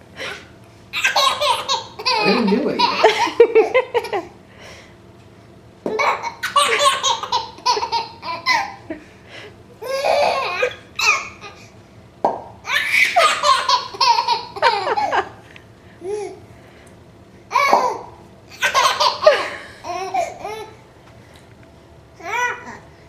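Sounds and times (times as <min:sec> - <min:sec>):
baby laughing: 0:01.0 - 0:04.2, 0:06.0 - 0:08.9, 0:09.8 - 0:11.6, 0:12.7 - 0:15.3, 0:17.5 - 0:20.8
mouth pop noise: 0:12.2 - 0:12.6.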